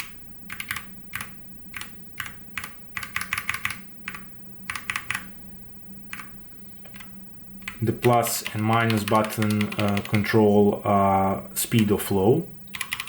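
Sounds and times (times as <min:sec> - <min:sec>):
mechanical keyboard clicks: 0:00.0 - 0:05.4, 0:06.1 - 0:10.5, 0:12.7 - 0:13.0.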